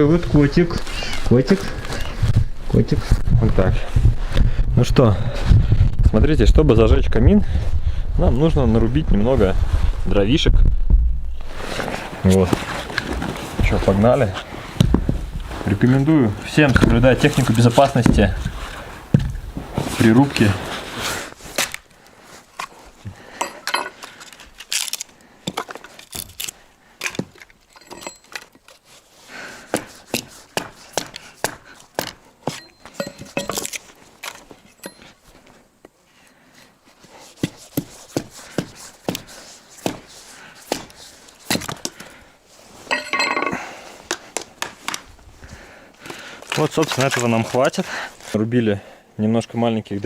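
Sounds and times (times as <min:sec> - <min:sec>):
wood cracking and splintering: 0:24.1 - 0:27.6.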